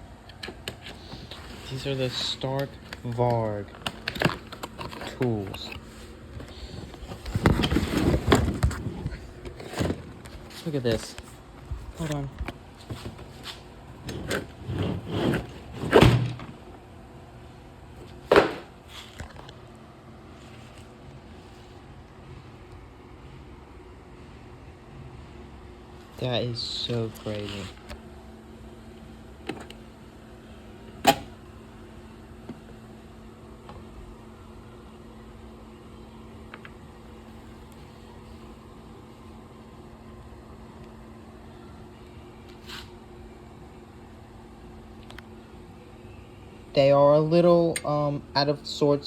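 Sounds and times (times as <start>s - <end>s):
steady low hum: 0.0s - 49.0s
tool case knocks and clunks: 18.3s - 18.7s.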